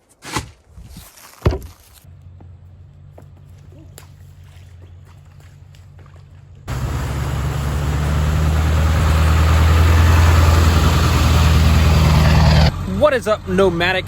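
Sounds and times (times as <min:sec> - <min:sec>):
pickup truck engine running: 0:06.7 - 0:14.0.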